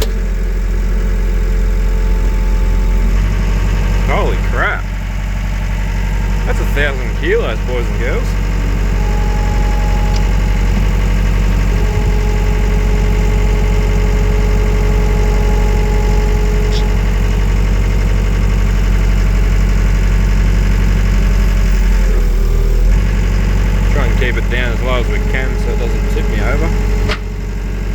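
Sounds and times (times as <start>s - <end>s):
diesel engine under load: 0.0s - 27.9s
high steady whine: 6.1s - 19.3s, 23.9s - 27.9s.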